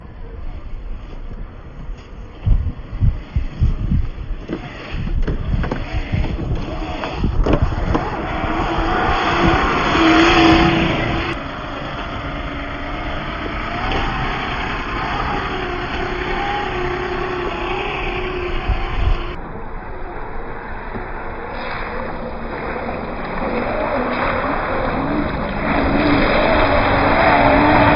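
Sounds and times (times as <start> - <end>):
thumps over rough ground: 2.4 - 8.3
rc car electric motor whining: 3.4 - 19.4.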